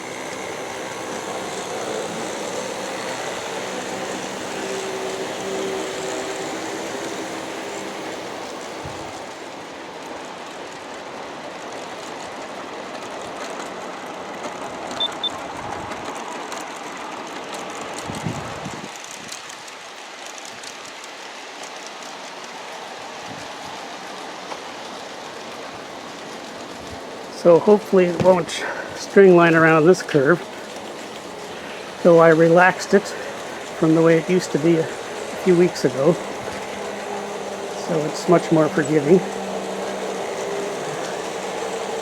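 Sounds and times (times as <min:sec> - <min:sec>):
model train wheels rumbling: 0:00.0 - 0:42.0
short high beeps: 0:15.0 - 0:15.4.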